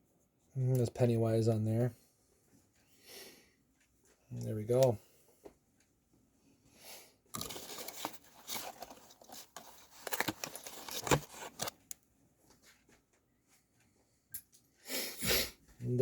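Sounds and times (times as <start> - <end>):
packaging rustling and crinkling: 7.4 - 12.0.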